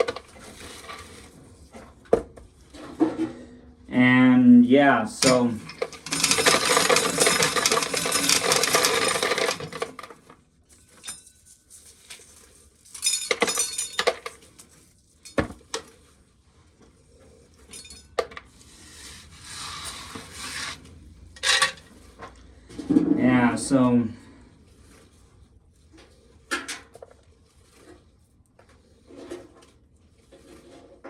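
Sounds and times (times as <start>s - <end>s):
corn kernels rattling into pail: 5.1s - 10.3s.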